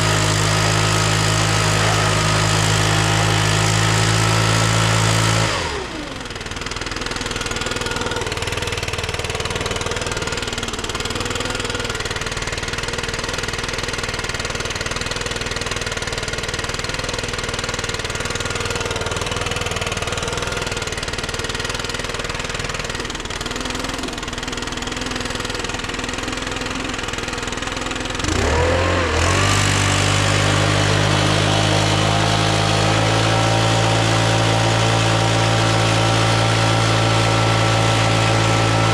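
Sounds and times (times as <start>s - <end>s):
snowblower engine running: 0.0s - 38.9s.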